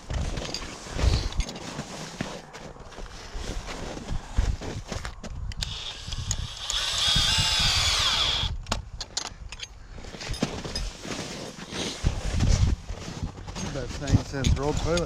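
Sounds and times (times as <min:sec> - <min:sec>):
power tool motor winding down: 0:05.6 - 0:08.6.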